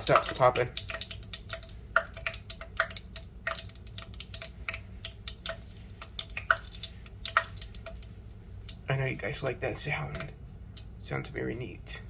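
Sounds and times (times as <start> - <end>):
bacon sizzling with pops: 0.0 - 8.1.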